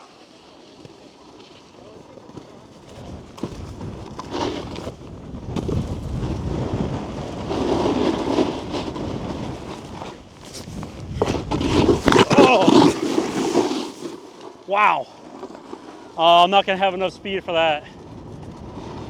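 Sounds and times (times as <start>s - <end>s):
snowboard scraping on snow: 0.0s - 19.0s
wind rushing over microphone: 3.0s - 12.4s, 16.6s - 19.0s
snowboard landing thump: 5.5s - 6.7s.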